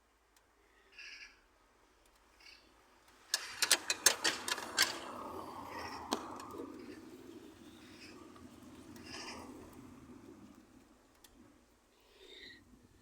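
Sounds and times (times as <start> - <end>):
spanners clanking on metal: 3.3 - 5.1.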